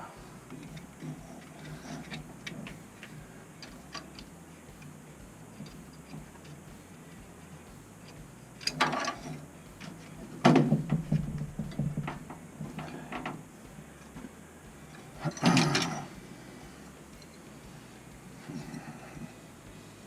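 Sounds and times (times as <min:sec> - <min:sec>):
clattering and knocking on metal: 0:08.0 - 0:13.5, 0:15.2 - 0:16.1.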